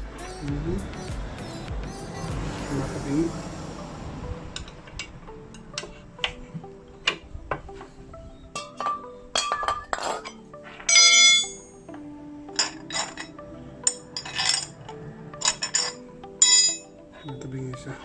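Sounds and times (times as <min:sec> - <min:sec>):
background music: 0:00.0 - 0:18.0
metal tools clinking: 0:08.6 - 0:11.8, 0:12.6 - 0:16.9
ringing metallic clang: 0:08.6 - 0:11.8, 0:15.4 - 0:16.9.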